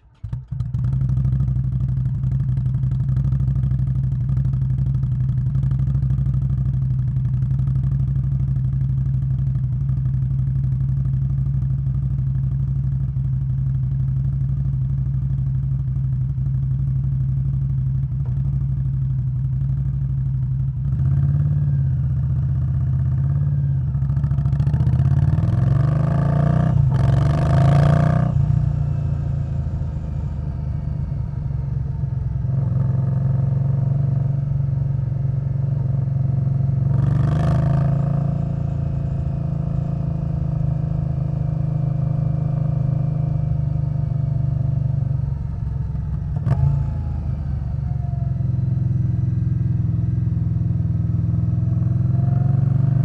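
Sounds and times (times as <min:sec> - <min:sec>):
motorcycle engine idling and revving: 0:00.0 - 0:53.0.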